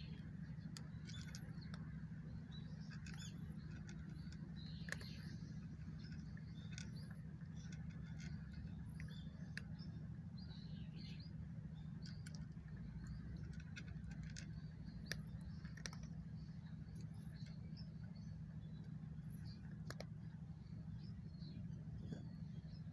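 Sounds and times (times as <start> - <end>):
low hum: 0.0 - 22.9
cat chewing and licking: 11.9 - 16.3.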